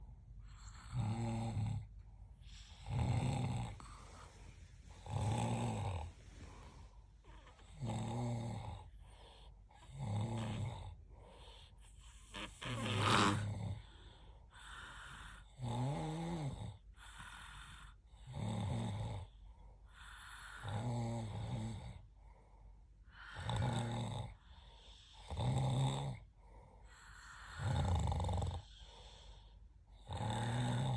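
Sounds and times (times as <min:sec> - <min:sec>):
quiet breathing: 0:00.0 - 0:30.9
rattling snores: 0:02.6 - 0:11.0, 0:11.9 - 0:13.9, 0:14.6 - 0:19.4, 0:23.2 - 0:30.9.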